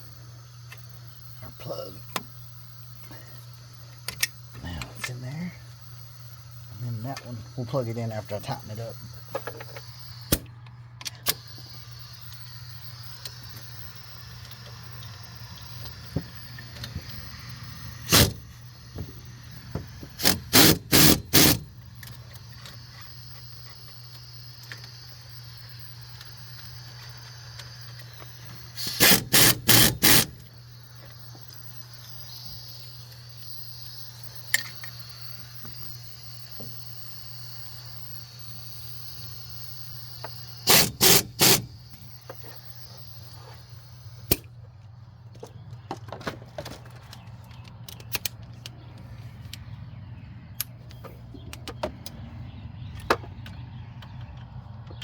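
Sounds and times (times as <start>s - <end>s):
impact wrench bursts: 6.9s - 10.5s, 11.1s - 44.5s.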